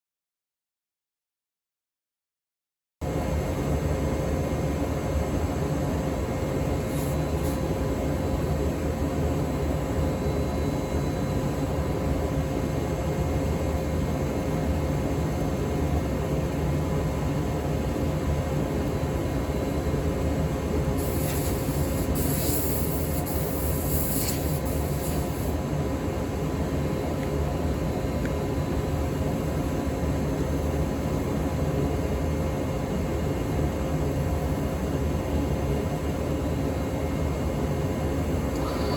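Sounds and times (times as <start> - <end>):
cnc router humming and whining: 3.0 - 38.9
router bit cutting with hiss: 21.0 - 25.6, 38.6 - 38.9.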